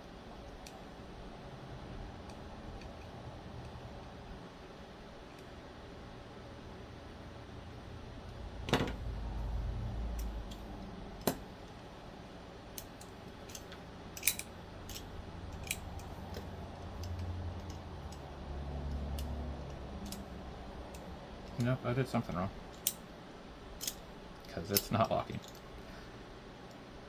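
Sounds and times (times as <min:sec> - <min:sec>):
low rumbling handling noise: 0:08.2 - 0:11.7
folding knife metal clicks: 0:18.9 - 0:20.2, 0:23.8 - 0:24.0.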